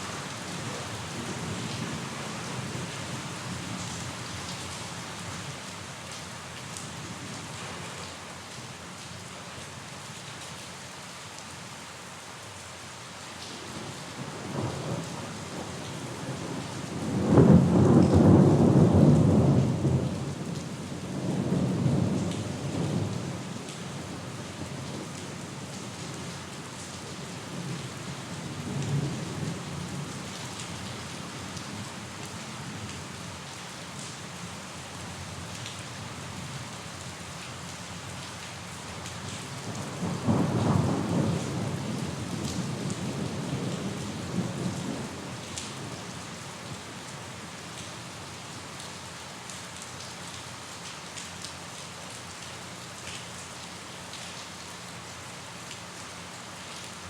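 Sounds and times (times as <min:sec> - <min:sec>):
heavy rain falling: 0:00.0 - 0:57.0
thunder rumbling: 0:39.8 - 0:45.3.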